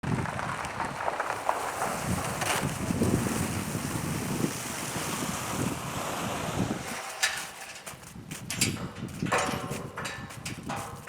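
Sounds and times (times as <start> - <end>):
wind buffeting microphone: 0.0 - 11.0
short rustles or knocks: 6.8 - 11.0.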